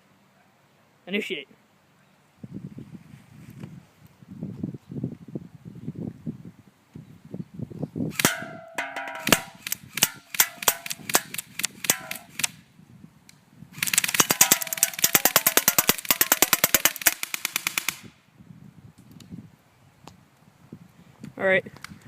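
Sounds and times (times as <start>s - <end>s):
airsoft gun shots: 8.1s - 12.6s, 13.8s - 18.1s.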